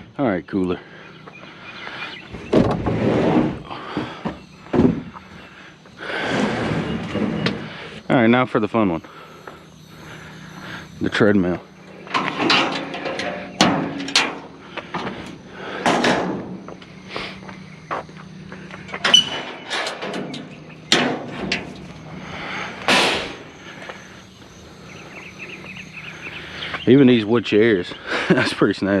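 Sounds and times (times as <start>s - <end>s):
treadmill scraping: 6.1s - 8.0s.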